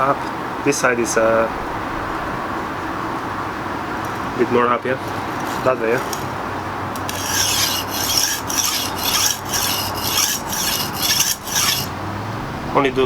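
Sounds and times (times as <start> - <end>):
knife scraping on whetstone: 5.0 - 6.4, 7.0 - 11.9.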